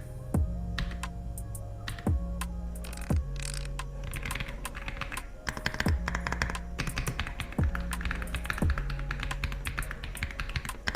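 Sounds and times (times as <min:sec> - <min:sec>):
background music with bass: 0:00.0 - 0:10.1
mechanical keyboard typing: 0:02.8 - 0:10.9.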